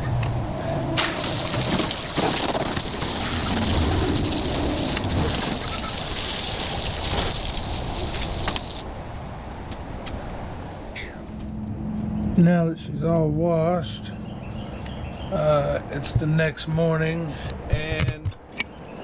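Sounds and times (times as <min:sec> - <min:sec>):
water spraying onto mower: 0:01.0 - 0:08.8.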